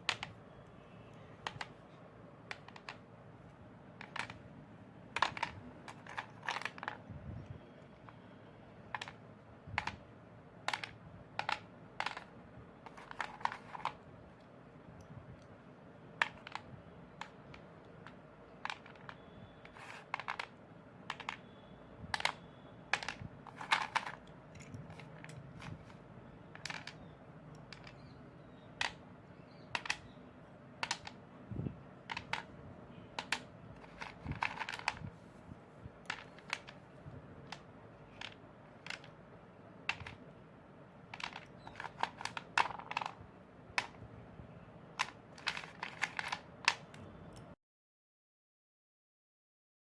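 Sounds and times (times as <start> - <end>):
slate pencils being crunched: 4.0 - 4.4, 5.1 - 7.0, 12.9 - 14.0, 16.2 - 21.5, 22.2 - 28.2, 28.8 - 30.2, 30.8 - 31.2, 32.0 - 32.5, 33.1 - 35.2, 36.0 - 39.2, 39.8 - 40.3, 41.1 - 43.2, 45.0 - 47.1.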